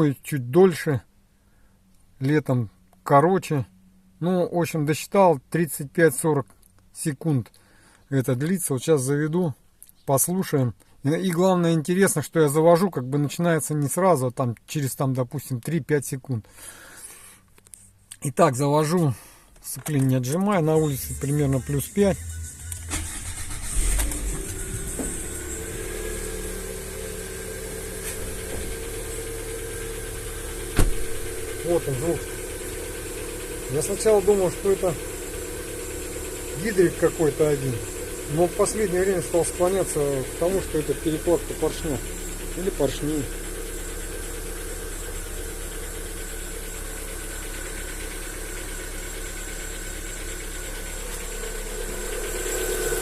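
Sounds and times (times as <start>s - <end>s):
car engine idling: 19.0s - 53.0s.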